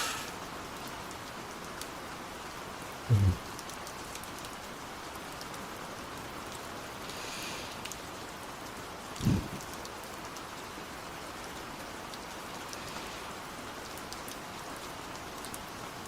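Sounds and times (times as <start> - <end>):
person breathing close: 0.0 - 0.4, 3.1 - 3.4
steady rain falling: 0.0 - 16.0.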